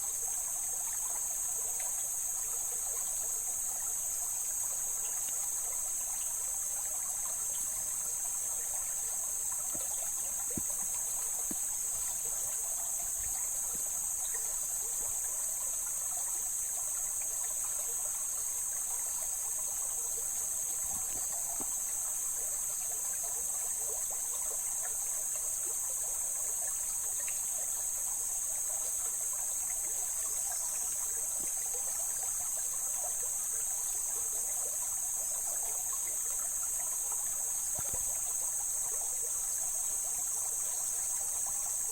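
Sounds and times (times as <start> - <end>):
stream flowing over rocks: 0.1 - 26.5.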